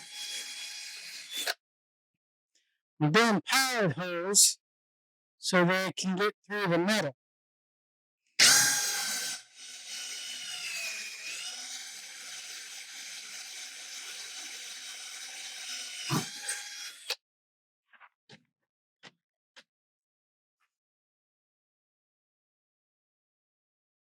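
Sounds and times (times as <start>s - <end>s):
electric drill whining through metal: 0.0s - 1.6s, 8.4s - 17.2s.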